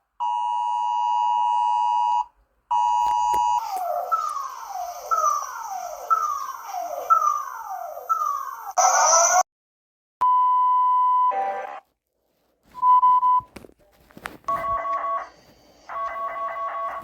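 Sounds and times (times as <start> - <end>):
pulsing two-tone alarm: 0.3 - 9.4, 14.5 - 17.0
falling electronic alert sweep: 3.4 - 9.4.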